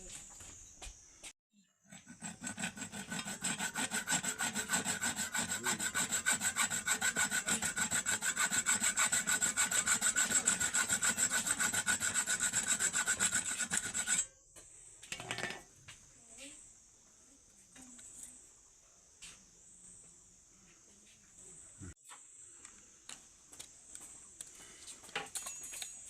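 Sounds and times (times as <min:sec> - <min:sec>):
hand tool rasping a hard surface: 0:01.9 - 0:14.3.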